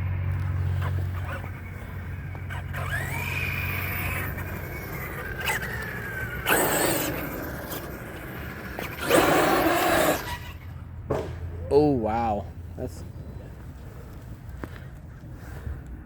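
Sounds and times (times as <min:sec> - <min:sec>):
tyres scraping and skidding: 0:00.1 - 0:11.5
electric motor whining: 0:00.6 - 0:10.7.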